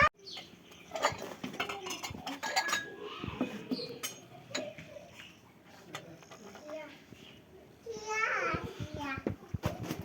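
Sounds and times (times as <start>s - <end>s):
small objects clinking and tapping: 0.3s - 2.9s.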